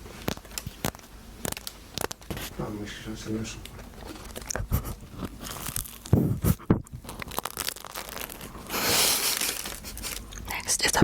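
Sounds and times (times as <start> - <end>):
pastry crackling and tearing: 0.2 - 2.6, 3.6 - 6.2, 7.0 - 10.5
paper rustling: 7.0 - 10.3.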